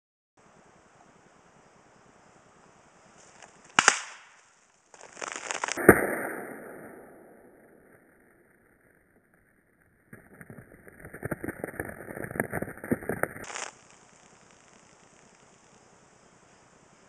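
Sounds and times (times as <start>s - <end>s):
crackling: 3.1s - 16.5s.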